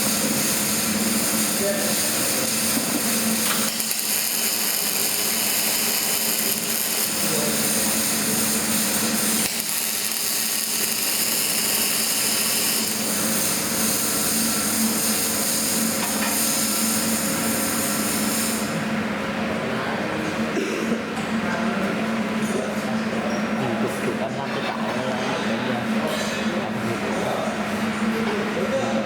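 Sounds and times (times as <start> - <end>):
arc welding hiss: 0.0 - 18.7.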